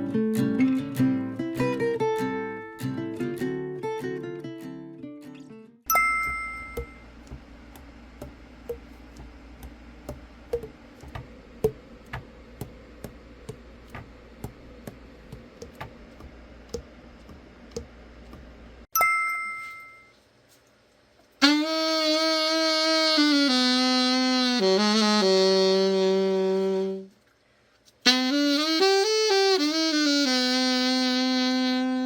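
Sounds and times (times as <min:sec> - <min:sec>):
chime ringing: 0:05.9 - 0:07.1, 0:19.0 - 0:20.2.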